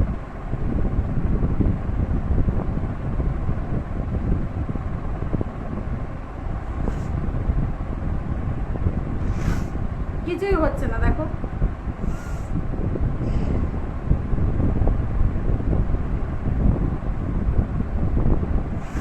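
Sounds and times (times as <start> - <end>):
wind noise on microphone: 0.0 - 19.0
faint short hiss: 9.2 - 9.8, 12.0 - 12.5.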